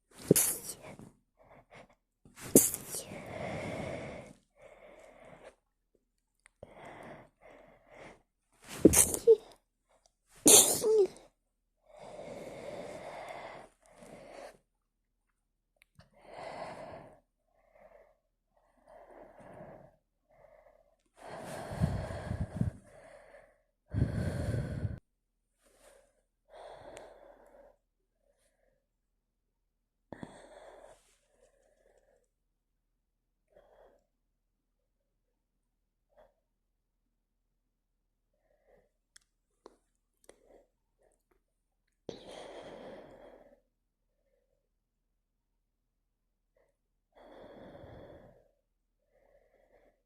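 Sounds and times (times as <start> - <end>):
breathy sniffs and breaths: 0.0 - 5.7, 6.7 - 9.5, 16.1 - 25.0
woman sneezing: 0.2 - 0.8, 2.5 - 3.0, 8.8 - 9.4, 10.5 - 11.2.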